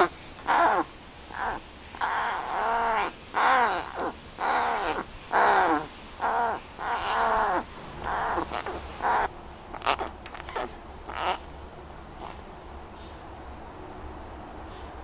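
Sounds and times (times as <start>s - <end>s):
crow cawing: 0.0s - 11.4s.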